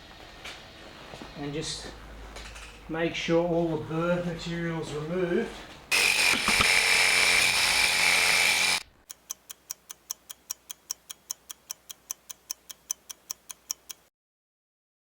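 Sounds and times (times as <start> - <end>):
power tool grinding metal: 5.9 - 8.8
faint even ticking: 9.0 - 14.1.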